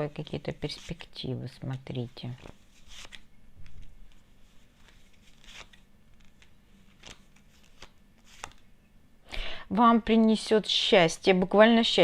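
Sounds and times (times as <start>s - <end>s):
cards swishing and tapping: 1.7s - 8.7s.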